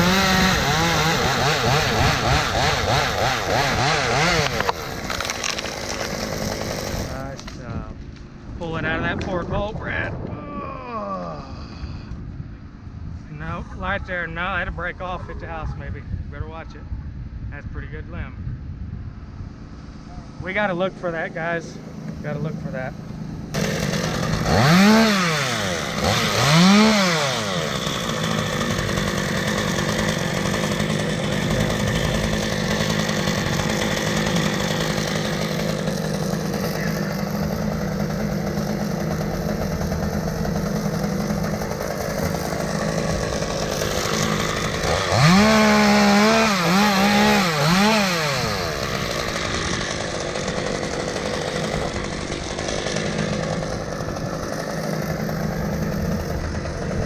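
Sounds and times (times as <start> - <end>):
chainsaw engine revving: 0.0 - 7.6, 21.2 - 57.0.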